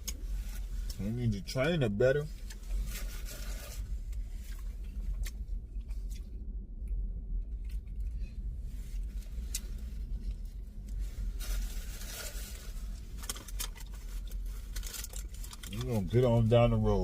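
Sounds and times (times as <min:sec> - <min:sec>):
steady low rumble: 0:00.0 - 0:17.0
food packaging rustling: 0:11.3 - 0:15.8.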